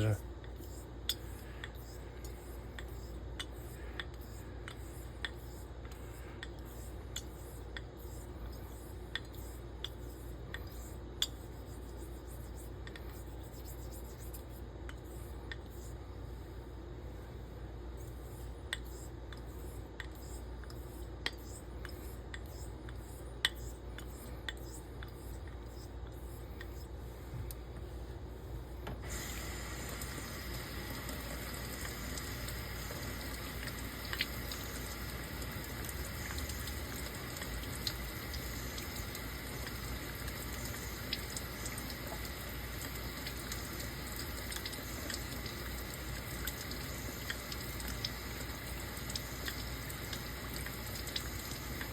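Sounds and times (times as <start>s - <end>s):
tap running water: 28.8s - 51.9s.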